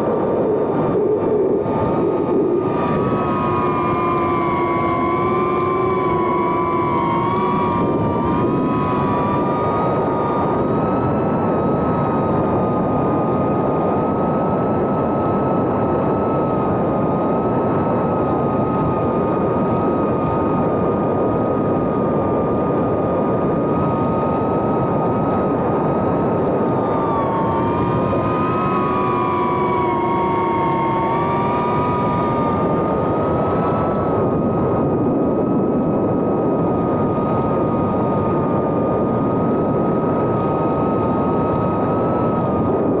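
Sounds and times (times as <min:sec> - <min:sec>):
drone motors whining: 0:00.0 - 0:13.6, 0:22.8 - 0:43.0.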